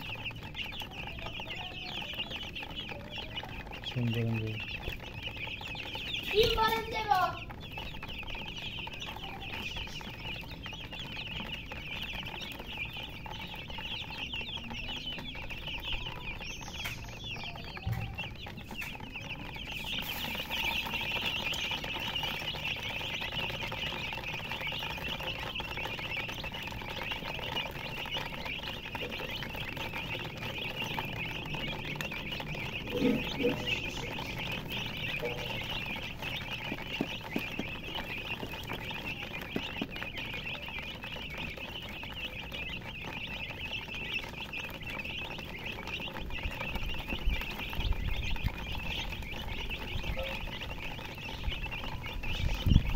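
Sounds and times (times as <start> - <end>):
baby chicks peeping: 0.0 - 52.9.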